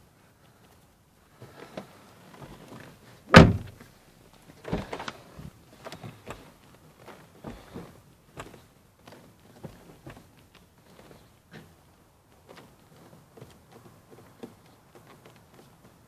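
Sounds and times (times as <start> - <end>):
small clicks and knocks: 1.6 - 16.0
car door thud: 3.3 - 3.8.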